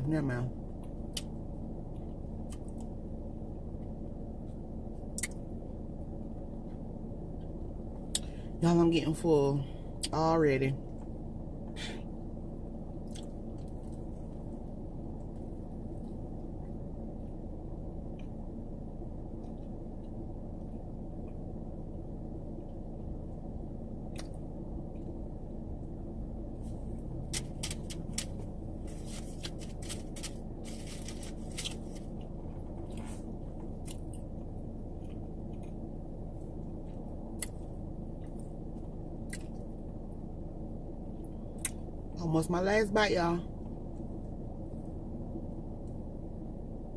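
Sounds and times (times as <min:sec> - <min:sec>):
steady low hum: 0:00.0 - 0:46.9
biting and chewing: 0:27.0 - 0:39.7
crisp crunches: 0:27.3 - 0:32.3.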